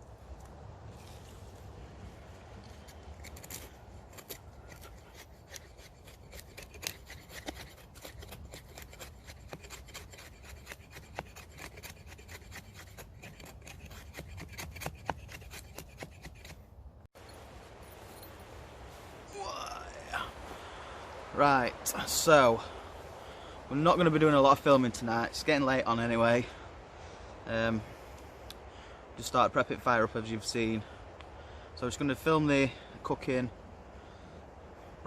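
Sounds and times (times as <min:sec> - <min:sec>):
blade scraping wood: 0:02.6 - 0:16.7.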